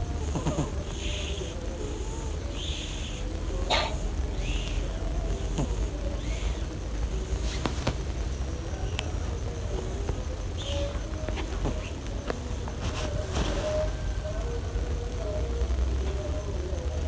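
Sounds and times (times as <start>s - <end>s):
cat snoring: 0.0s - 8.0s
steady low rumble: 0.0s - 16.9s.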